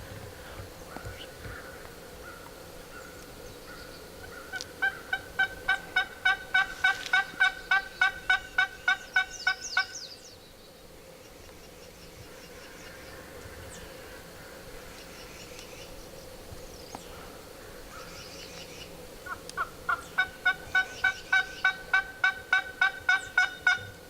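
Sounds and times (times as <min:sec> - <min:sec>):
turkey yelps: 0:19.3 - 0:23.9.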